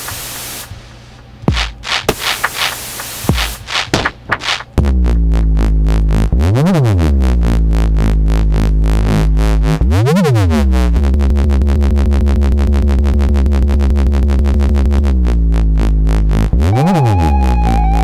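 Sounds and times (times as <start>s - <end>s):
dubstep electronic music: 1.5s - 7.7s, 14.5s - 18.0s.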